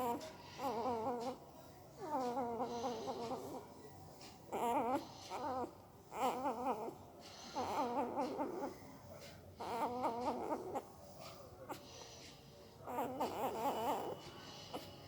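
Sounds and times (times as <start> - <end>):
puppy whimpering: 0.0 - 1.4, 2.0 - 10.9, 12.9 - 15.0.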